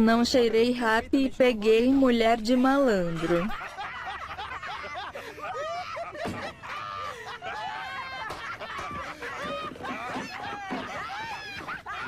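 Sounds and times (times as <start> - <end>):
high-pitched snickering and laughter: 3.1 - 12.0.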